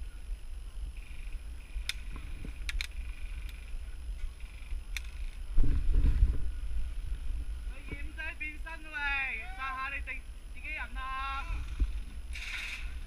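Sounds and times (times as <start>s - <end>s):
wind rumble: 0.0s - 13.0s
microphone handling noise: 1.1s - 8.2s, 11.3s - 13.0s
sharp clicks: 1.8s - 3.7s, 4.4s - 5.4s.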